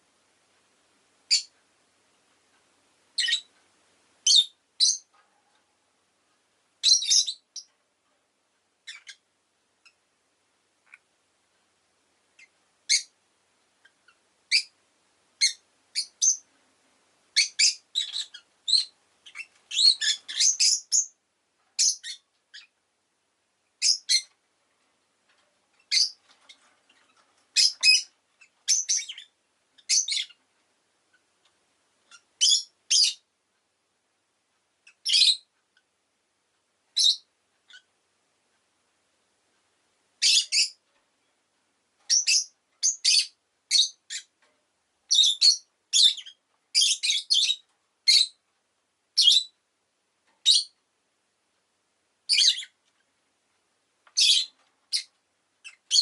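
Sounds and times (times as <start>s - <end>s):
lovebird chirping: 1.3s - 1.6s, 3.1s - 3.5s, 4.2s - 5.1s, 6.8s - 7.7s, 8.8s - 10.0s, 12.4s - 13.2s, 13.8s - 14.8s, 15.4s - 16.5s, 17.3s - 21.2s, 21.8s - 22.8s, 23.8s - 24.4s, 25.8s - 30.4s, 32.1s - 33.3s, 34.9s - 35.5s, 36.9s - 37.9s, 40.2s - 40.8s, 42.1s - 44.3s, 45.1s - 48.4s, 49.2s - 49.6s, 50.4s - 50.8s, 52.3s - 52.8s, 54.1s - 56.0s.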